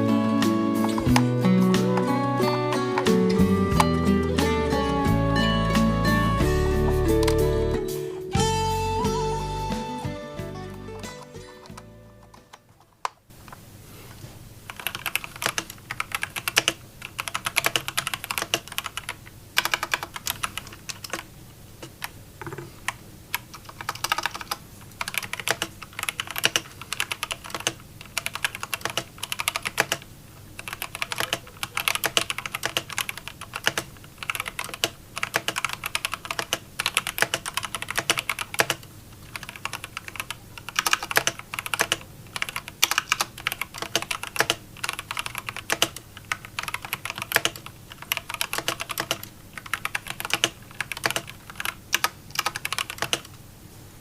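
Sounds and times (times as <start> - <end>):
mechanical keyboard typing: 14.7 - 21.3, 22.0 - 53.3.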